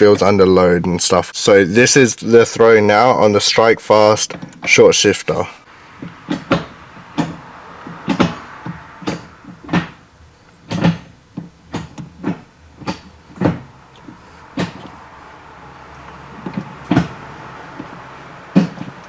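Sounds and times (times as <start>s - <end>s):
gear shifter clunks and clicks: 5.7s - 19.0s.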